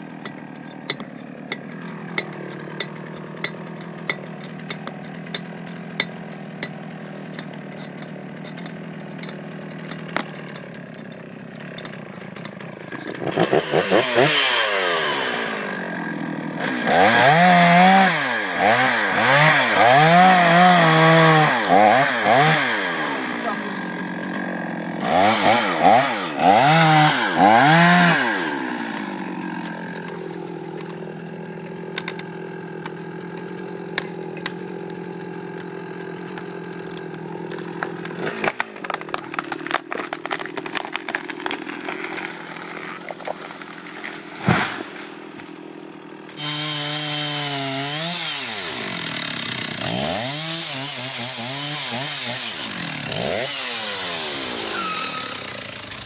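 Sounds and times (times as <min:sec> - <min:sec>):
chainsaw revving: 0:00.0 - 0:56.0
sharp crack: 0:37.8 - 0:45.6.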